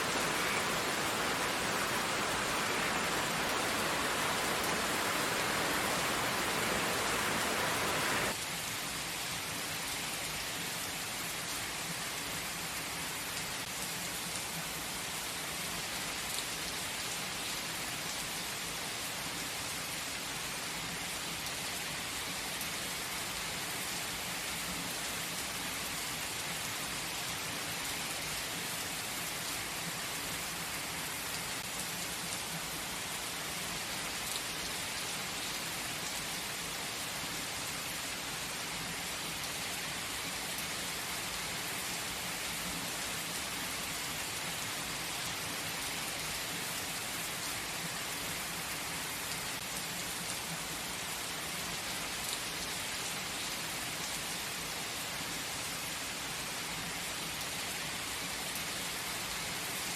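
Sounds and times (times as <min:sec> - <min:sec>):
rushing noise: 0:00.0 - 0:08.3
gentle rain patter: 0:00.0 - 0:59.9.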